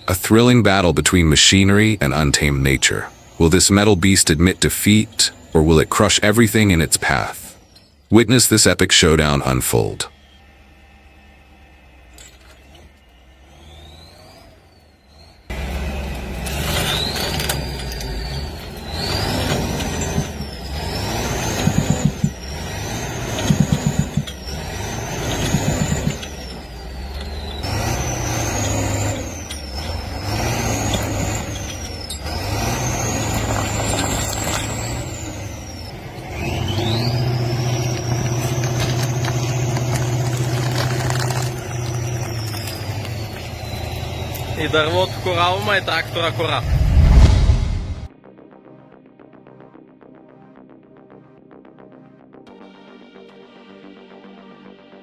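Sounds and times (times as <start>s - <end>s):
heavy diesel machine: 0.0s - 48.1s
high whine: 46.5s - 48.1s.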